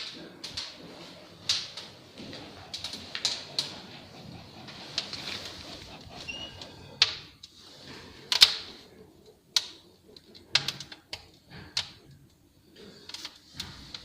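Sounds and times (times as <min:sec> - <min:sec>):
firewood crackling and popping: 0:00.0 - 0:04.2, 0:07.0 - 0:14.0.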